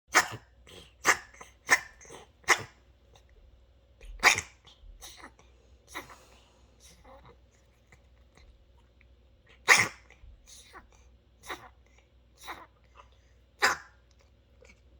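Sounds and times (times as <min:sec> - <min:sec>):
cat coughing: 0:00.1 - 0:02.8, 0:04.2 - 0:07.2, 0:09.6 - 0:10.8, 0:13.6 - 0:14.0.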